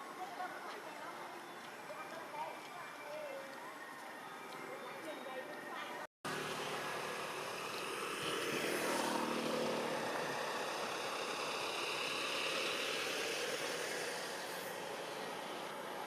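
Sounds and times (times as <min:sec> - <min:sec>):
engine drone: 0:06.3 - 0:16.0.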